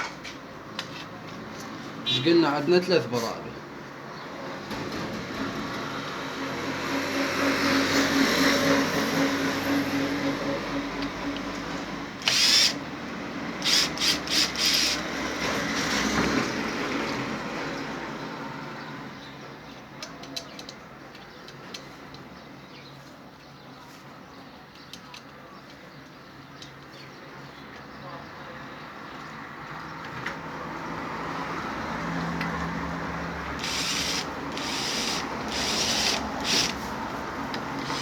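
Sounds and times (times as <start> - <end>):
power drill driving screws: 12.2 - 12.8, 13.6 - 15.1, 33.6 - 36.9, 37.8 - 38.0.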